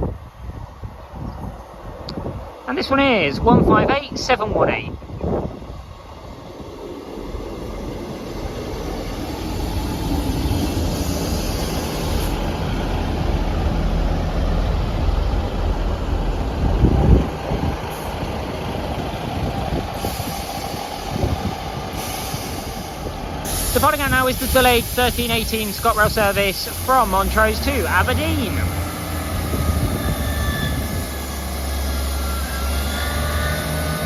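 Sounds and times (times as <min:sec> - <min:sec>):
diesel engines rumbling: 0:00.0 - 0:34.0
air brake hisses: 0:20.0 - 0:21.0, 0:21.9 - 0:23.8.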